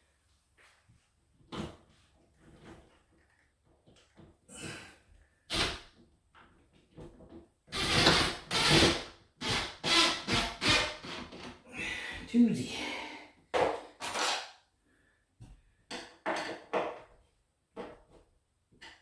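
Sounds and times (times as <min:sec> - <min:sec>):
screw grinding into wood: 0:07.7 - 0:11.4, 0:14.0 - 0:14.5.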